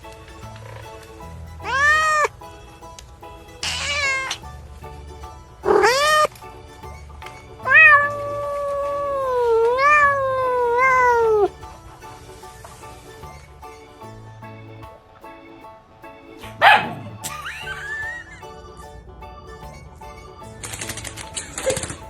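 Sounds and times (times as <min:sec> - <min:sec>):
background music: 0:00.0 - 0:22.0
cat meowing: 0:01.6 - 0:02.3, 0:03.6 - 0:04.4, 0:07.6 - 0:11.5.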